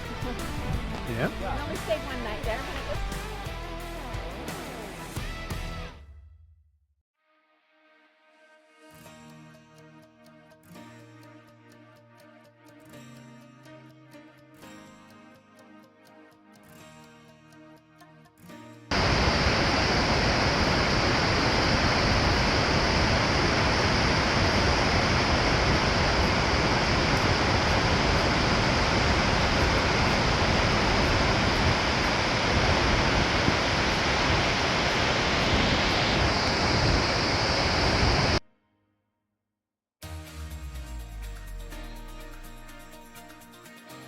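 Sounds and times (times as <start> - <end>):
waterfall roaring: 18.9 - 38.4.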